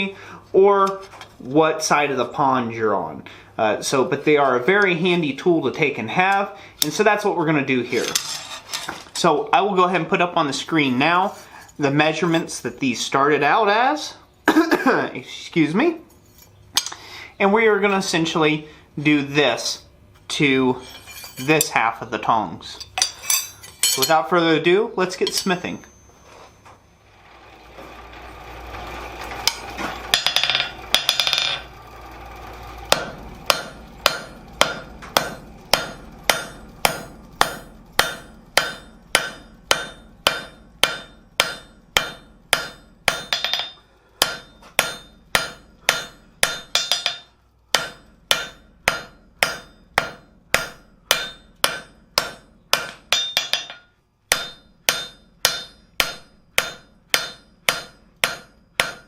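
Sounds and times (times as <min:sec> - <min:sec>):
hammer striking steel on anvil: 0:16.4 - 0:17.0, 0:20.8 - 0:21.8, 0:22.8 - 0:24.3, 0:25.2 - 0:26.2, 0:29.5 - 0:31.6, 0:32.9 - 0:59.0
metallic clanking: 0:20.8 - 0:21.8, 0:22.7 - 0:24.3, 0:25.2 - 0:26.6, 0:29.3 - 0:31.7, 0:32.9 - 0:59.0.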